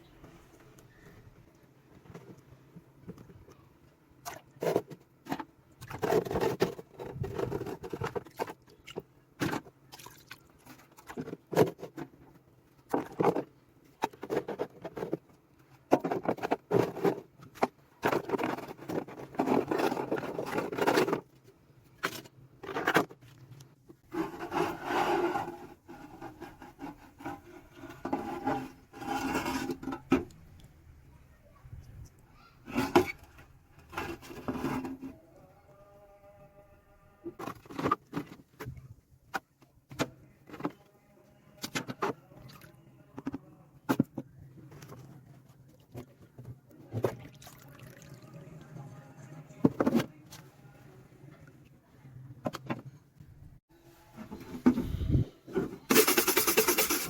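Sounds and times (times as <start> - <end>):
scraping on steel toolbox: 24.1 - 30.4, 32.7 - 35.1, 54.0 - 57.0.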